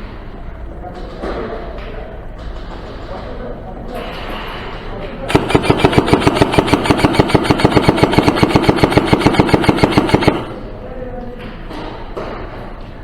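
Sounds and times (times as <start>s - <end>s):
airsoft gun full-auto burst: 5.3s - 10.6s.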